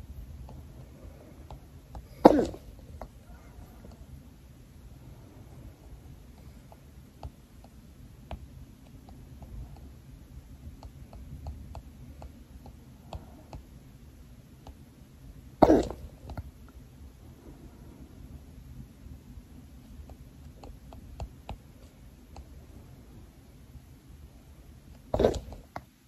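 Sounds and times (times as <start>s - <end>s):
person hiccuping: 2.0s - 2.9s, 15.6s - 16.1s.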